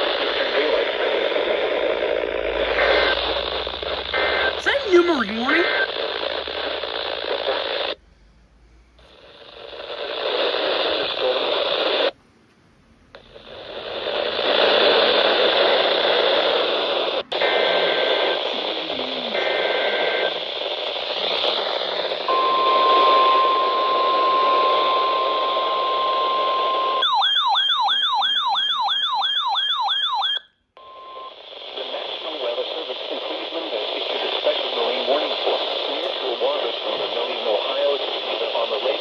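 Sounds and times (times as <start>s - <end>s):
radio static hiss: 0.0s - 8.0s, 9.0s - 12.2s, 13.1s - 25.9s, 31.2s - 39.0s
steady warning alarm tone: 22.3s - 31.3s.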